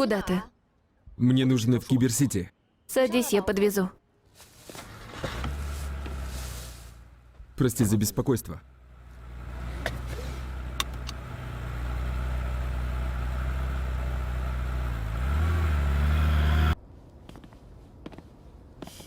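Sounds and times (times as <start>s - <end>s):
car engine running and revving: 4.8s - 16.8s.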